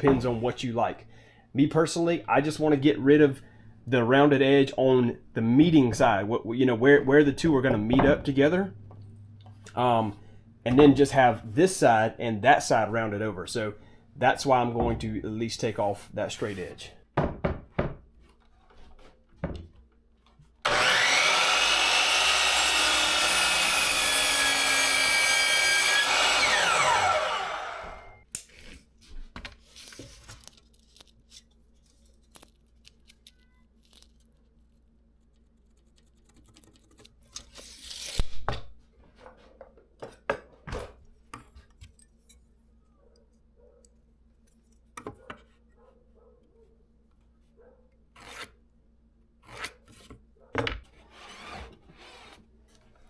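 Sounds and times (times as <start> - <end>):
power saw cutting wood: 20.6 - 28.2.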